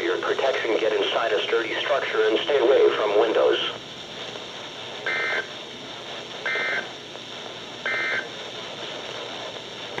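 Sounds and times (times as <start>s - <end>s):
radio static hiss: 0.0s - 10.0s.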